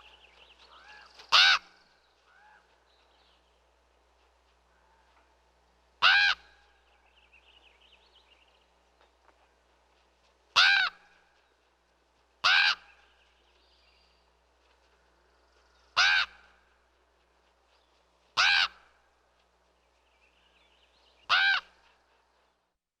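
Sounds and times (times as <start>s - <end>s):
crow cawing: 0.8s - 1.7s, 2.3s - 2.7s, 6.0s - 6.5s, 10.6s - 11.1s, 12.4s - 13.0s, 16.0s - 16.6s, 18.4s - 18.9s, 21.3s - 21.8s.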